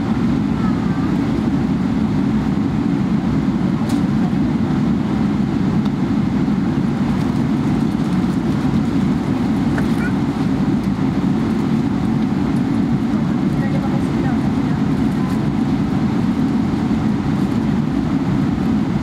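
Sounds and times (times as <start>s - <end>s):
aircraft cabin rumble: 0.0s - 19.0s.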